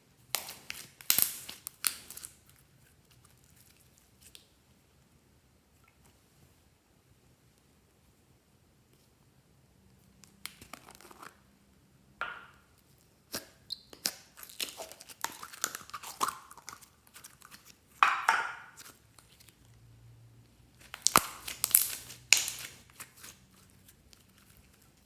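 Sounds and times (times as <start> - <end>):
slime crackling and popping: 0.2 - 2.5, 13.3 - 19.5, 20.8 - 25.0.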